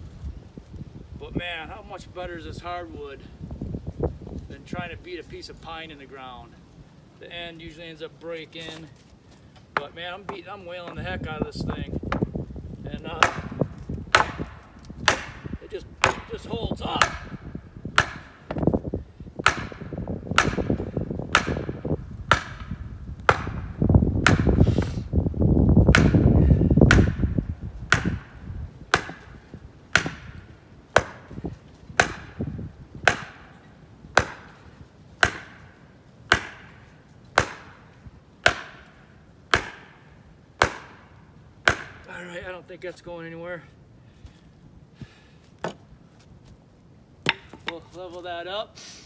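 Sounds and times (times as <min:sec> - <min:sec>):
hammer striking wooden stake: 0:08.6 - 0:08.9, 0:09.7 - 0:25.1, 0:25.8 - 0:42.2, 0:47.2 - 0:48.0.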